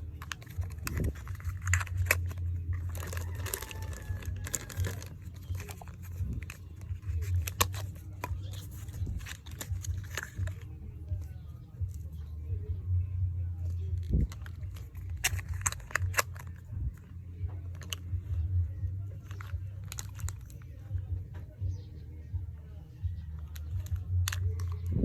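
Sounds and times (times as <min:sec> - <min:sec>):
plastic packaging crinkling: 0:00.0 - 0:10.7, 0:14.0 - 0:16.7, 0:19.2 - 0:20.7
plastic tearing: 0:00.0 - 0:10.7, 0:14.0 - 0:17.0, 0:19.2 - 0:20.6
steady low hum: 0:00.0 - 0:25.0.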